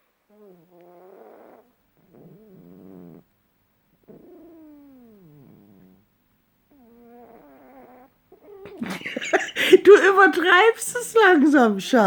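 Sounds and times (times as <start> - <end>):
cat snoring: 0.3 - 3.3, 4.0 - 6.1, 6.7 - 8.8.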